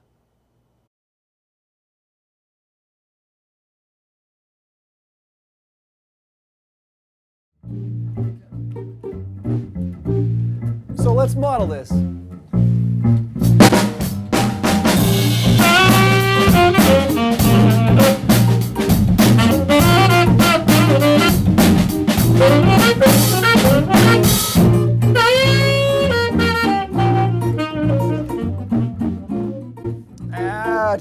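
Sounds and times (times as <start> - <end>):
bass: 7.6 - 31.0
drum kit: 13.2 - 31.0
horn line: 13.5 - 29.6.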